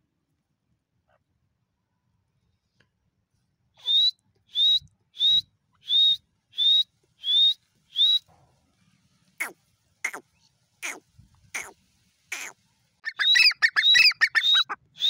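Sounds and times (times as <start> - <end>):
bird whistled calls: 3.8 - 8.3, 12.4 - 15.0.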